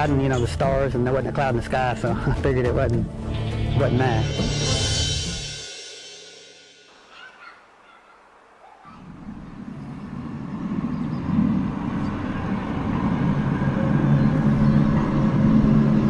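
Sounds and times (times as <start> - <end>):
low rumbling drone: 0.0 - 5.9, 9.1 - 16.0.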